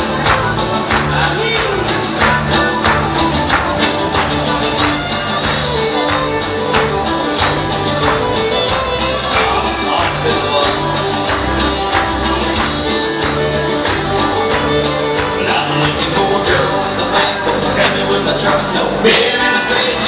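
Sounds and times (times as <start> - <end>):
up-tempo country music: 0.0 - 20.0.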